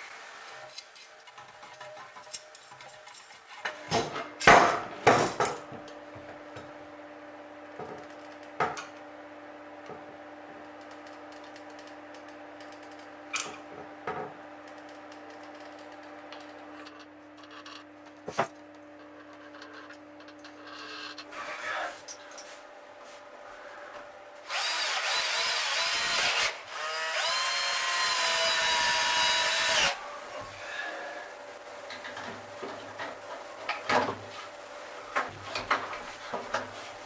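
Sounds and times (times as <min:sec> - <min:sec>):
small machine humming: 0:23.5 - 0:33.1.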